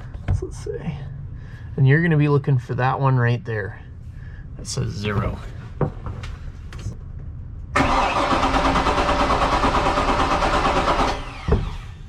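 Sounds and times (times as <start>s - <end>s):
starter cranking engine: 7.8s - 11.9s.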